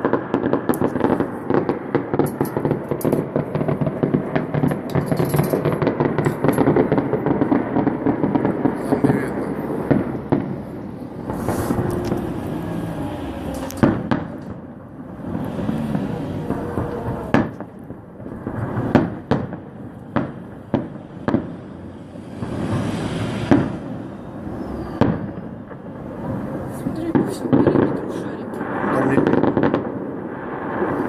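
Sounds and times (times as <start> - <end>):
fireworks bangs: 0.0 - 31.0
fireworks crackling hiss: 8.5 - 31.0.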